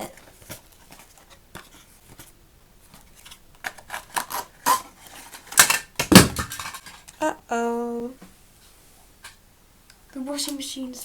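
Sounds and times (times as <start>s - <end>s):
packaging crackling and scraping: 0.1s - 7.2s.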